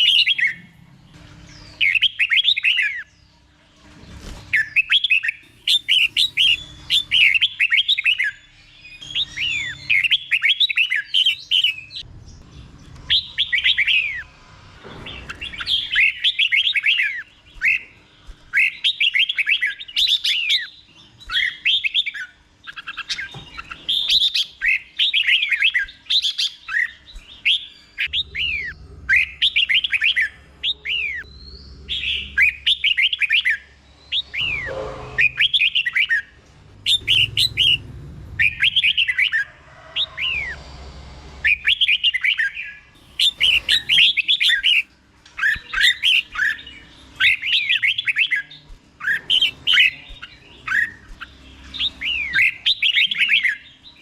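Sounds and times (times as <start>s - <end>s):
bird singing whistled notes: 15.4s - 37.8s.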